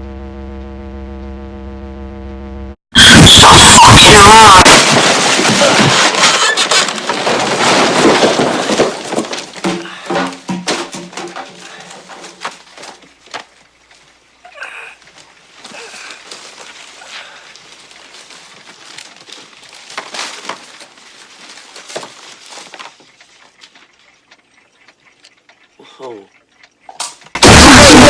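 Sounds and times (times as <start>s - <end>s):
debris falling and clattering: 4.2s - 13.6s.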